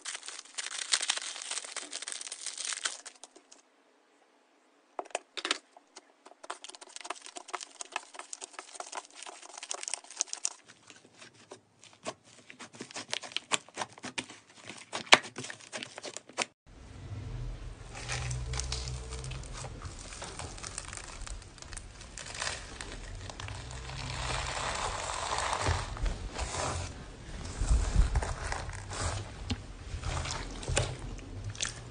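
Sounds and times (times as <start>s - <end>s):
slime crackling and popping: 0.0s - 3.5s, 6.4s - 10.6s, 17.9s - 26.2s
slime squishing and rustling: 0.0s - 3.6s, 6.0s - 16.6s, 17.2s - 31.9s
low rumble: 16.7s - 31.9s.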